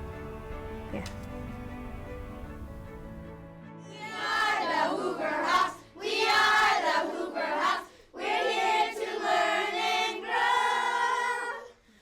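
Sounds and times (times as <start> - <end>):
children singing together: 3.9 - 11.8.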